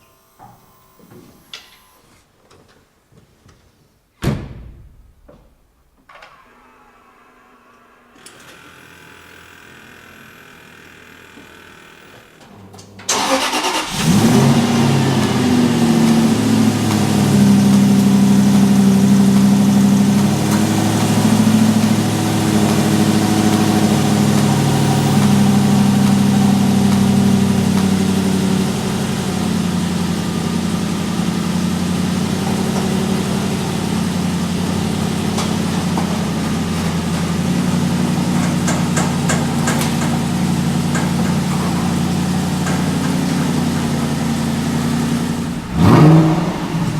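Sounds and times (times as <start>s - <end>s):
car engine starting and idling: 12.0s - 46.9s.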